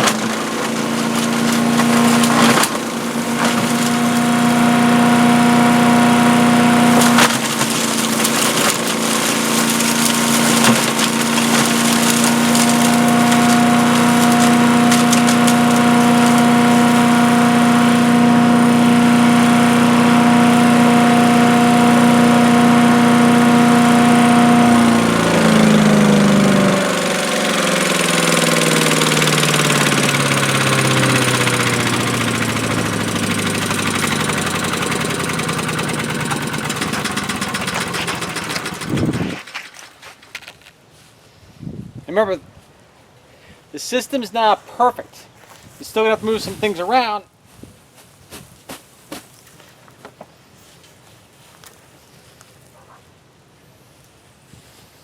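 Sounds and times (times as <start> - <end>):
wood chipper engine running: 0.0 - 40.7, 45.4 - 47.2
crackling and snapping in grinder: 0.0 - 40.8.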